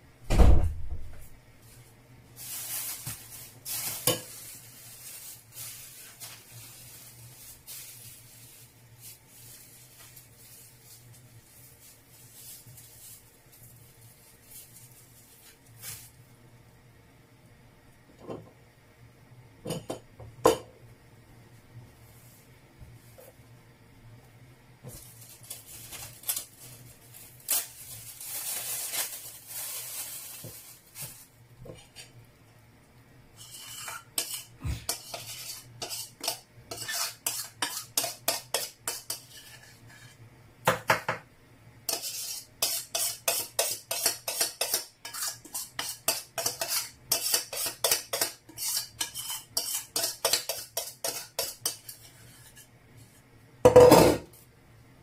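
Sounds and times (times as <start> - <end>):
rustling: 1.1 - 16.2, 24.9 - 32.1.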